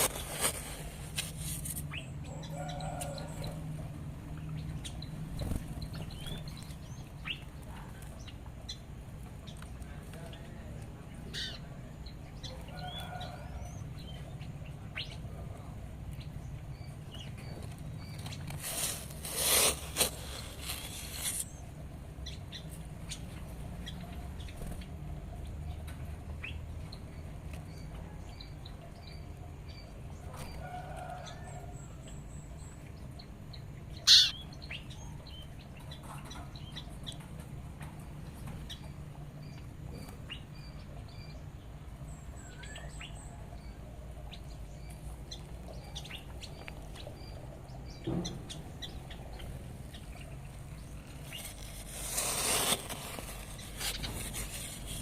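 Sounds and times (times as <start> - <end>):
songbirds chirping: 0.0 - 55.0
rustling burst: 18.5 - 21.5.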